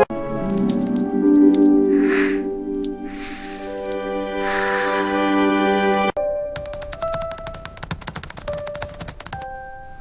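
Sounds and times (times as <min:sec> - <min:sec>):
quick clicking beat: 0:06.6 - 0:09.4.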